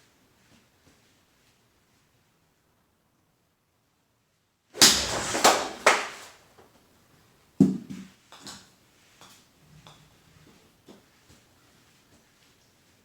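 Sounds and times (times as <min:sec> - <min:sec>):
golf ball strikes: 0:04.8 - 0:06.6.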